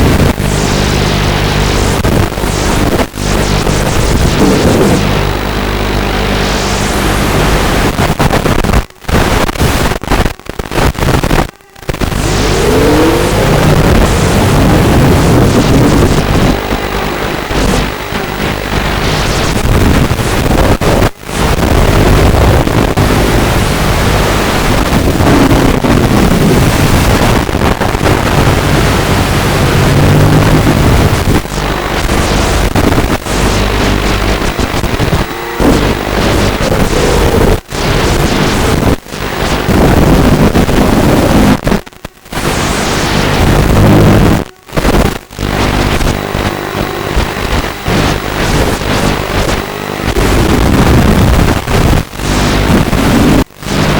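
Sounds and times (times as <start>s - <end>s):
loud rushing noise: 0.0s - 5.4s, 6.4s - 41.7s
quadcopter motors whining: 11.4s - 19.4s, 28.3s - 38.7s.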